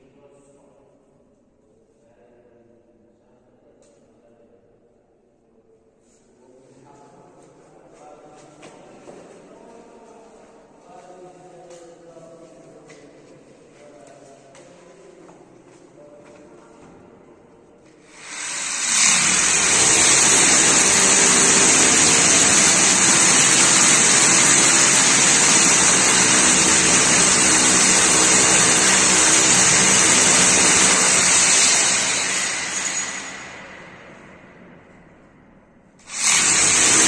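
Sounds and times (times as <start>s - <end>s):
power tool motor whirring: 18.1s - 33.5s, 36.0s - 37.0s.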